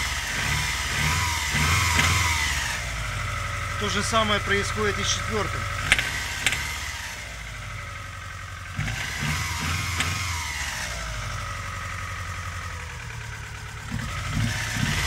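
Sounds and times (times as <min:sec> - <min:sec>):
engine idling unevenly misfiring: 0:00.0 - 0:15.0
sharp clicks: 0:05.8 - 0:06.8.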